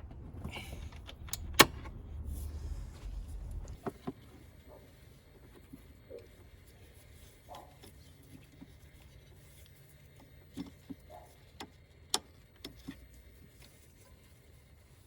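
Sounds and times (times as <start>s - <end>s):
low steady hum: 0.0s - 8.2s.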